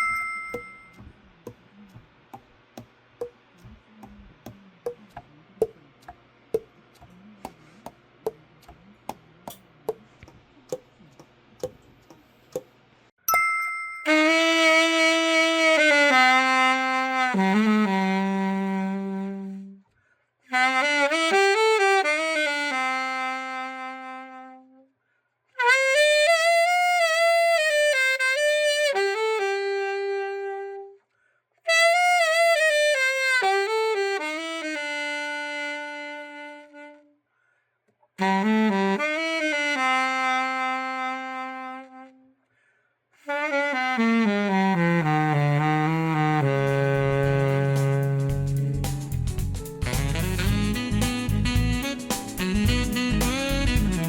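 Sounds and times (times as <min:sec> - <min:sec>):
saxophone solo with vibrato: 0:14.1 - 0:19.8, 0:20.5 - 0:24.8, 0:25.6 - 0:31.0, 0:31.7 - 0:37.1, 0:38.2 - 0:42.3, 0:43.2 - 0:48.8, 0:49.8 - 0:54.0.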